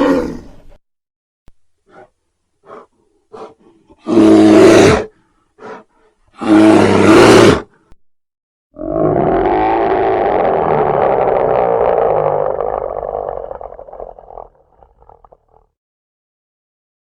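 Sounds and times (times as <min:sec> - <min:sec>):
bear roaring: 0:00.0 - 0:00.7, 0:01.9 - 0:07.8, 0:08.8 - 0:15.6
bear breathy huffs: 0:01.9 - 0:04.1, 0:05.0 - 0:06.4.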